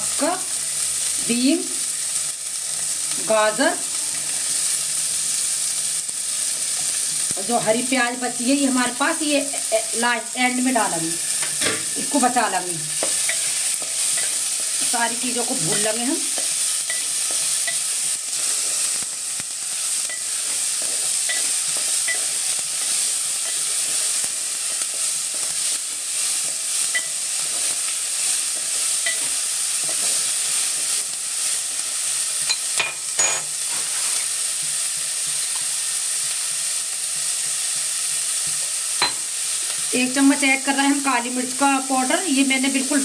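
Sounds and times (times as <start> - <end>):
vegetables sizzling in oil: 0.0 - 43.0
spatula scraping and tapping pan: 11.3 - 12.0, 12.9 - 15.0, 15.6 - 18.9, 20.0 - 25.6, 26.4 - 27.8, 28.4 - 31.0.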